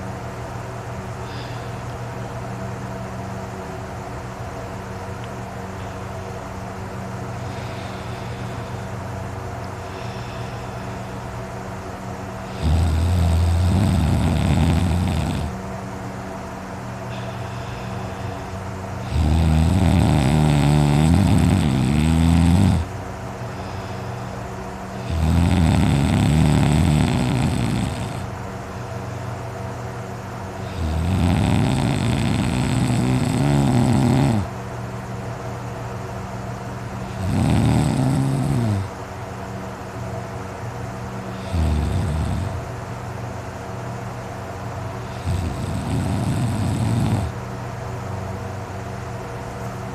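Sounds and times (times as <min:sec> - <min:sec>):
person snoring loudly: 0:12.4 - 0:15.6, 0:17.1 - 0:22.9, 0:25.0 - 0:28.3, 0:30.6 - 0:34.5, 0:37.0 - 0:38.9, 0:41.3 - 0:42.6, 0:45.0 - 0:47.4.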